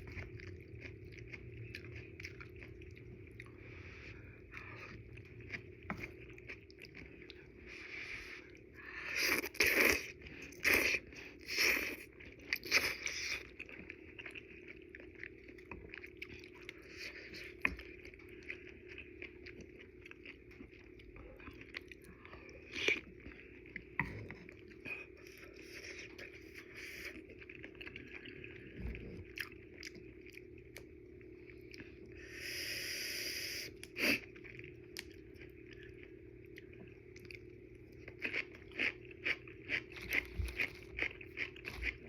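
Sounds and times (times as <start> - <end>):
soft chewing: 0.0 - 32.4, 33.4 - 42.0.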